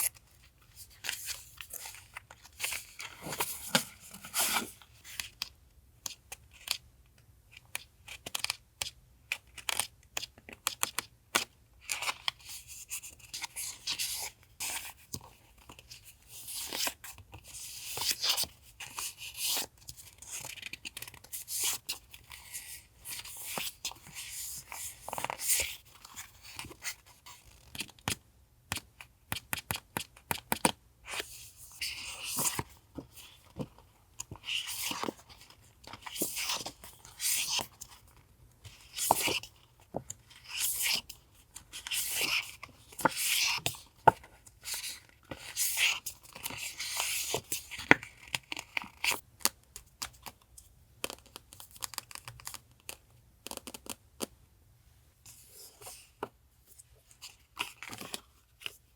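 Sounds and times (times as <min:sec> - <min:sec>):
paper rustling and crinkling: 0:00.0 - 0:05.4.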